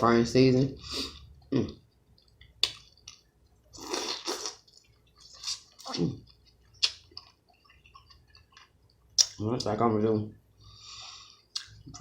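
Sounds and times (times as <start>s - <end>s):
wet mouth smacks and chewing: 2.1s - 9.4s.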